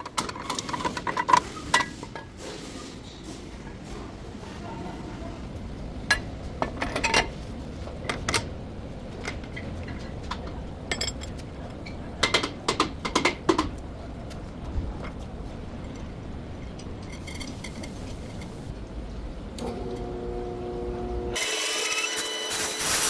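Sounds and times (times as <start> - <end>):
metal tools clinking: 10.9 - 12.0, 16.7 - 18.6.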